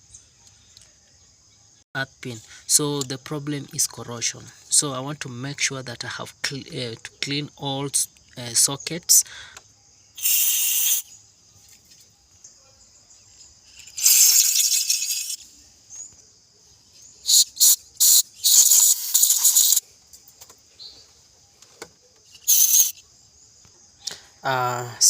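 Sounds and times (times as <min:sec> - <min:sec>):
aerosol spray hissing bursts: 0:10.2 - 0:11.1, 0:14.0 - 0:15.4, 0:17.3 - 0:19.8, 0:22.4 - 0:22.9.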